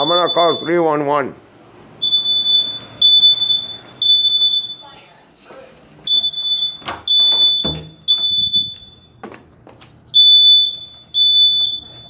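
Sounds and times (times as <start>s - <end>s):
fire alarm high-pitched beeps: 0.0s - 1.0s, 2.0s - 5.1s, 6.0s - 9.2s, 10.1s - 12.0s.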